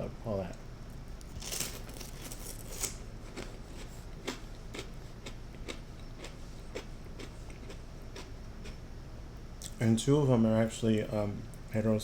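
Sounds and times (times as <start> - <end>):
chewing crunchy toast: 1.3 - 8.8.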